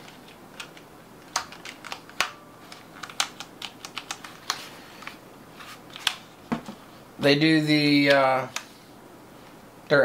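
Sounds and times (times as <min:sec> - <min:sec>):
keyboard clicks and taps: 0:03.0 - 0:04.6.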